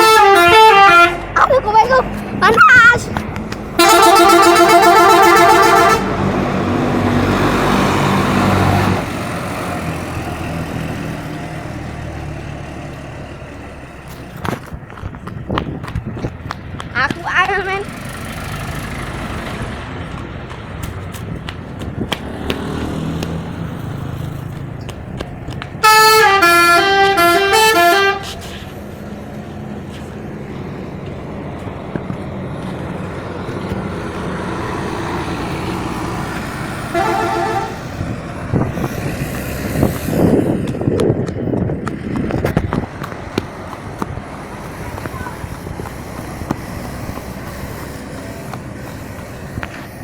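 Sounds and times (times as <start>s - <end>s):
bus horn tune: 0.0s - 1.5s, 3.7s - 7.2s, 25.8s - 28.8s, 36.8s - 38.1s
road traffic and engine noise: 0.0s - 50.0s.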